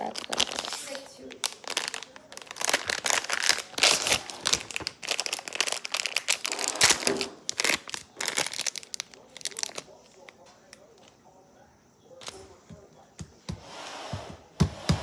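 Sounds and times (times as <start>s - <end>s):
slime clicking and crackling: 0.0s - 10.4s.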